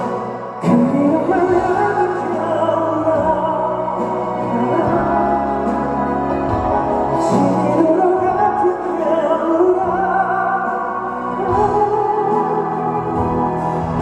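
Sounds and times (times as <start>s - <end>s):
live band playing pop ballad: 0.0s - 14.0s.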